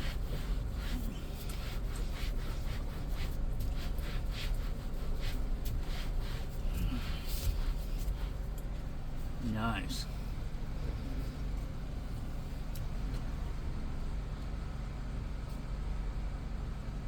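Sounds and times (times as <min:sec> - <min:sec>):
cloth wiping steering wheel: 0:00.0 - 0:13.4
steady low rumble: 0:00.0 - 0:16.8.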